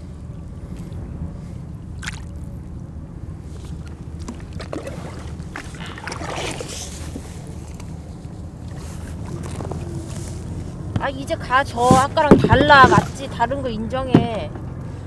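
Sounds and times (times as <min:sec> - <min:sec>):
water sloshing against kayak: 0:00.1 - 0:15.0
water splashing rush: 0:03.7 - 0:15.0
small knocks: 0:09.4 - 0:15.0.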